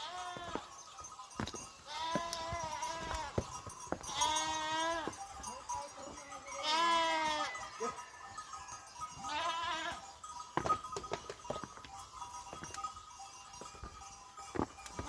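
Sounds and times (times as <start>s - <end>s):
sheep bleating: 0.0s - 0.7s, 1.9s - 5.2s, 6.2s - 8.0s, 9.2s - 10.1s.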